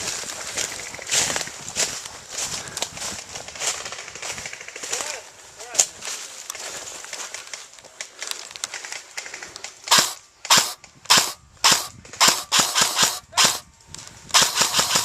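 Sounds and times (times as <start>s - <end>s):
airsoft rifle firing: 9.9s - 13.7s, 14.3s - 15.0s.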